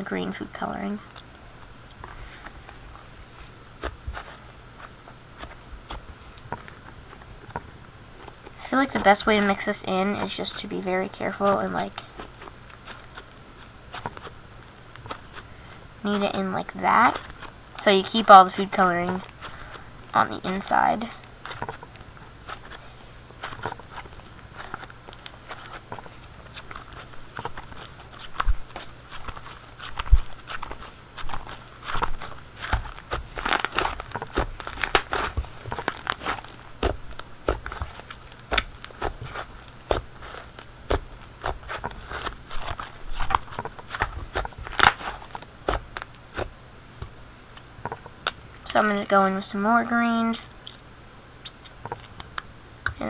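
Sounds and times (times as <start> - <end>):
wet slime squishing: 3.3 - 47.1
slime air pops crackling: 32.6 - 46.5.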